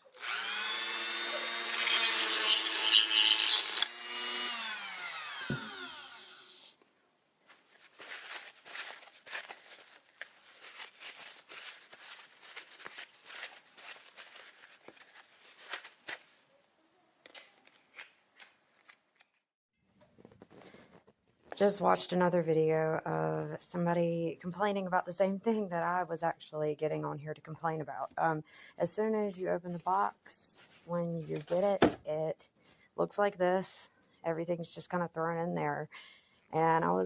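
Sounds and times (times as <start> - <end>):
rotary tool whining: 0.0 - 6.8.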